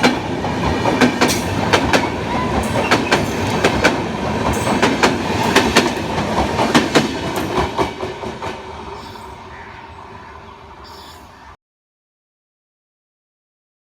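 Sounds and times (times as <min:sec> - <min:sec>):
train wheels clattering over rail joints: 0:00.0 - 0:08.6
train rushing past: 0:00.0 - 0:11.4.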